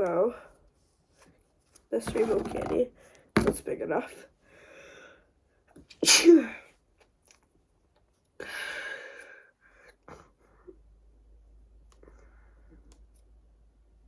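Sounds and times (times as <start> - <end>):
person sneezing: 6.0 - 6.6.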